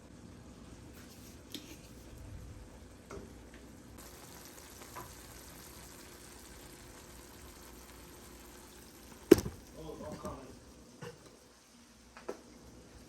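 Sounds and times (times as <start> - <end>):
food sizzling in a pan: 4.0 - 9.9.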